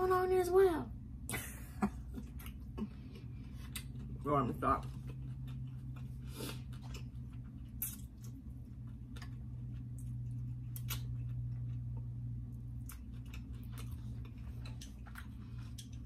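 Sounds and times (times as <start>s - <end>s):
steady low hum: 0.0s - 16.0s
chewing and eating clicks: 6.7s - 16.0s.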